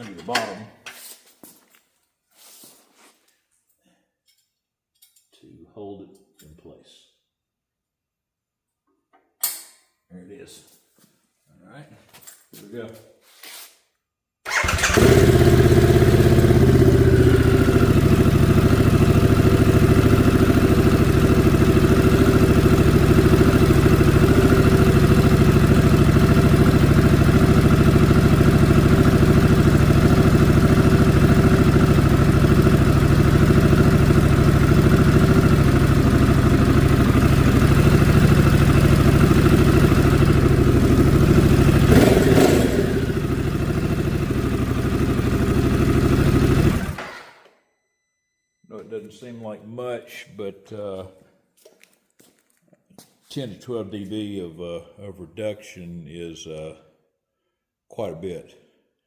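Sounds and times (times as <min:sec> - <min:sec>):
motorcycle engine starting and idling: 0:14.4 - 0:47.7.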